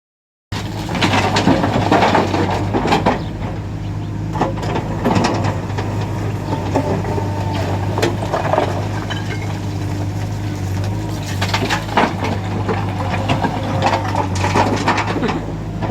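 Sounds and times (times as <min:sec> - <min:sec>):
diesel engine running under load: 0:00.5 - 0:15.9
rocks striking metal bucket: 0:04.3 - 0:15.9.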